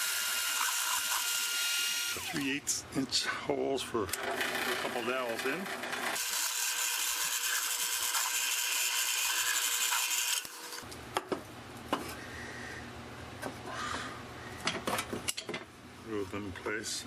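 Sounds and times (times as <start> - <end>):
drill press boring wood: 0.0 - 2.5, 4.1 - 10.8.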